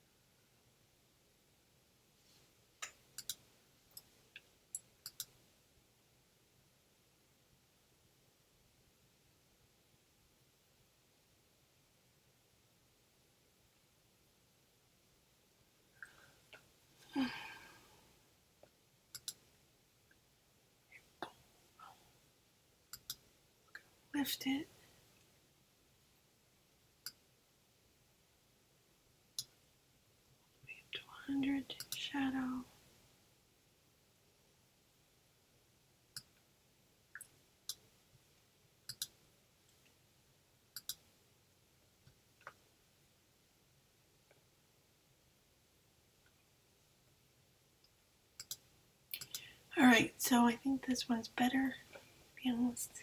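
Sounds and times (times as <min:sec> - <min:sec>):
computer mouse clicking: 0:02.8 - 0:04.1, 0:04.7 - 0:05.4, 0:19.1 - 0:19.4, 0:22.9 - 0:23.2, 0:31.8 - 0:32.0, 0:38.9 - 0:39.2, 0:40.8 - 0:41.0, 0:48.4 - 0:49.5.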